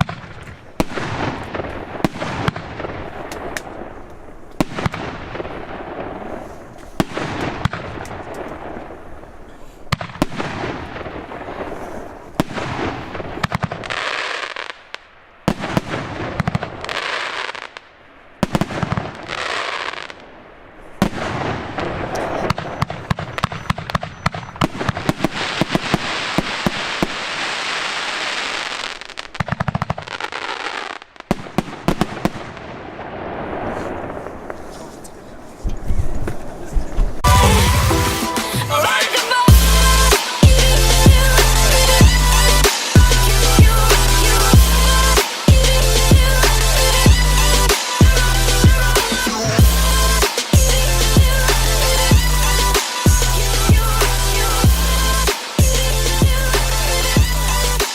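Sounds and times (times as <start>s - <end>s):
firework launch shots and bangs: 0.0s - 9.0s, 9.9s - 17.8s, 18.4s - 20.3s, 21.0s - 34.8s, 37.2s - 48.1s, 57.2s - 57.9s
firework hissing crackle: 0.0s - 35.0s, 37.2s - 57.9s.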